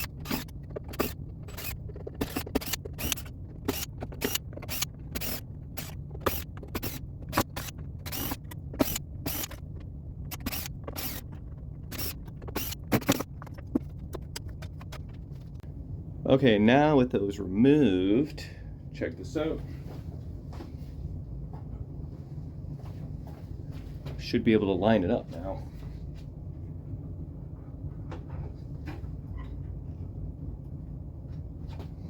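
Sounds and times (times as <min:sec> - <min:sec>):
clicks and scrapes of parts: 0:00.0 - 0:15.6
steady low hum: 0:00.0 - 0:32.0.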